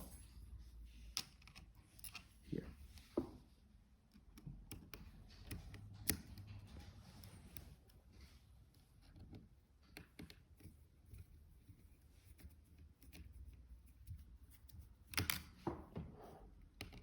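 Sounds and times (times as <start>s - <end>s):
screwdriver clicks and scrapes: 1.1s - 2.4s.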